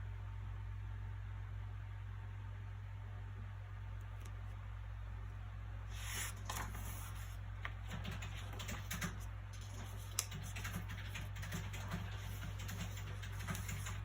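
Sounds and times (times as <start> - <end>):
low background hum: 0.0 - 14.0
book pages rustling: 6.0 - 7.8.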